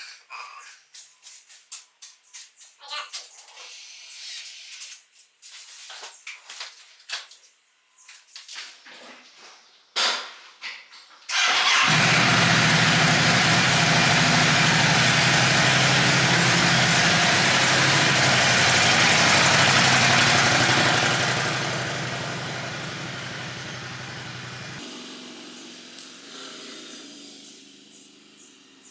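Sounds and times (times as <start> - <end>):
vehicle engine running: 11.4 - 24.8.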